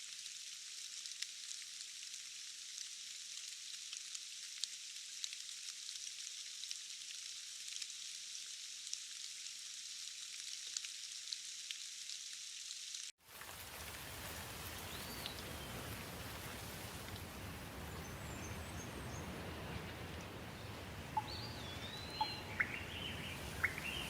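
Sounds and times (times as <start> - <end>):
sharp ticks of raindrops: 0.0 - 12.4, 13.2 - 24.0
rain hiss: 0.0 - 24.0
high chirp: 21.2 - 24.0.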